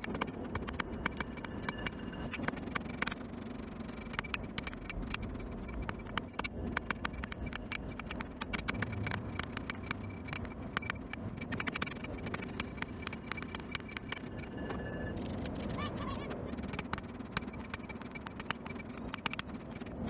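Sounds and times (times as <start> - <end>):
steady low rush: 7.8 - 12.5.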